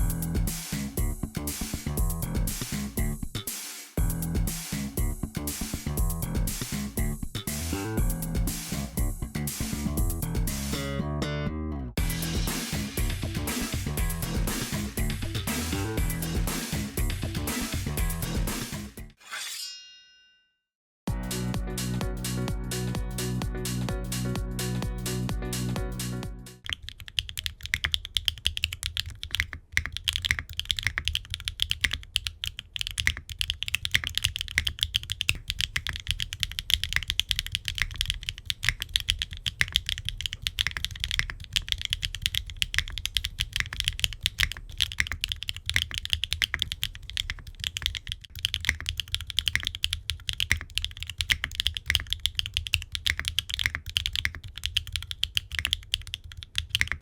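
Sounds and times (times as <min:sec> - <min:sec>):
fast mechanical keyboard typing: 0:26.6 - 0:57.0.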